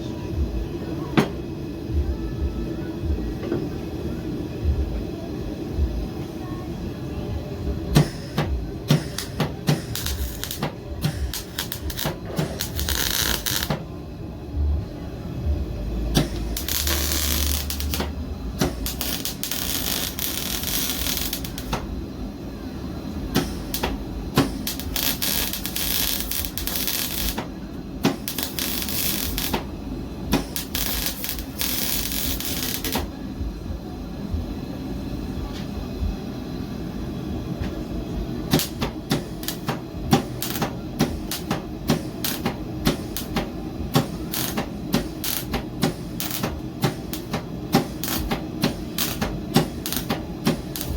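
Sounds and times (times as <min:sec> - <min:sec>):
welder arc crackling: 0:08.0 - 0:13.9, 0:16.1 - 0:21.9, 0:23.3 - 0:29.7, 0:30.3 - 0:33.1, 0:38.5 - 0:50.9.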